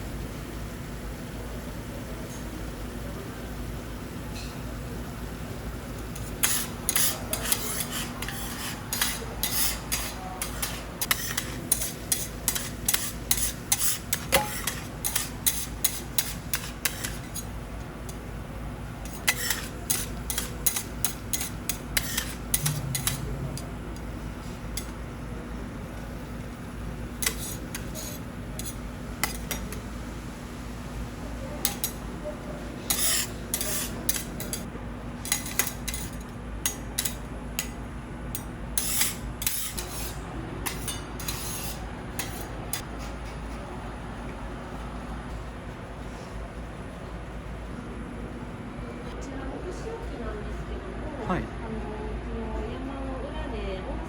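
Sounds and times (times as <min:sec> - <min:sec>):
metal spatulas scraping griddle: 0:06.1 - 0:17.5, 0:19.0 - 0:23.8, 0:27.2 - 0:29.8, 0:31.6 - 0:32.0, 0:32.8 - 0:37.7, 0:38.8 - 0:43.1.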